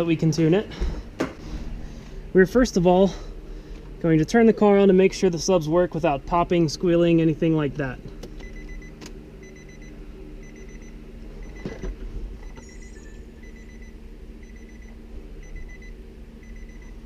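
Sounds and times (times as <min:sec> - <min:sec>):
steady low hum: 0:00.0 - 0:17.0
car warning chime beeping: 0:08.4 - 0:11.7, 0:12.5 - 0:17.0.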